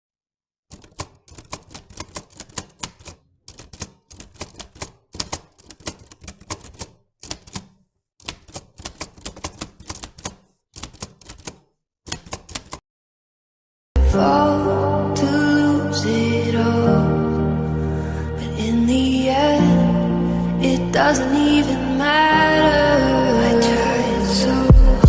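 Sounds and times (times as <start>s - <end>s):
rapid clicking: 0.7s - 12.8s.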